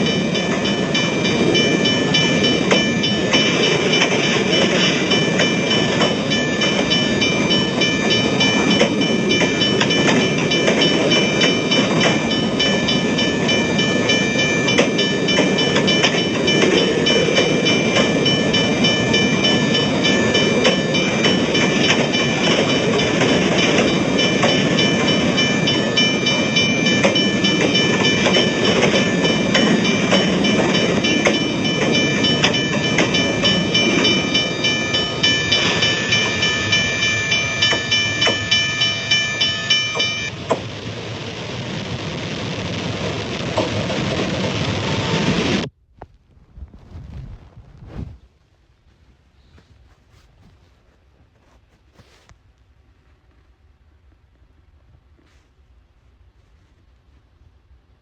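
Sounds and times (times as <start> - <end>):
level crossing warning bell ringing: 0.0 - 40.4
train rumbling past: 0.0 - 45.7
wheels clattering on rails: 0.0 - 45.7.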